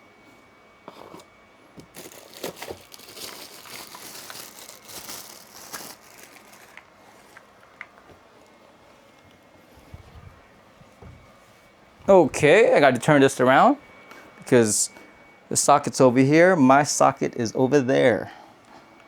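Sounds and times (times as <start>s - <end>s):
plastic packaging crinkling: 1.8s - 8.1s.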